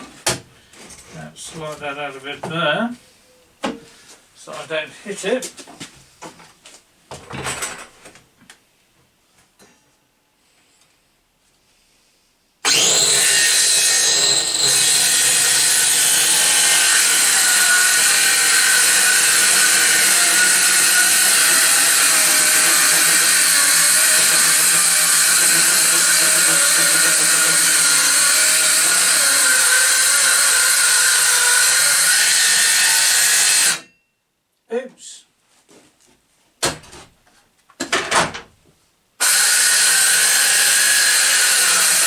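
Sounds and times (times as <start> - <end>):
circular saw cutting wood: 12.6 - 33.9, 39.2 - 42.0.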